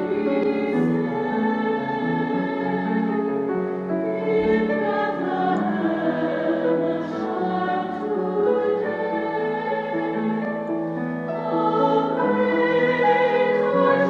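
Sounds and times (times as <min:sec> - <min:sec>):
choir singing long held notes: 0:00.0 - 0:14.0.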